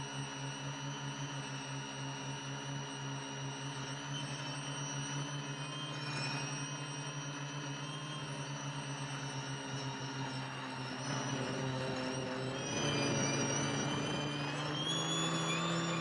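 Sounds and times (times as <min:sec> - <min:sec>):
propeller whines: 0:08.1 - 0:16.0
drone motors buzzing: 0:08.7 - 0:16.0.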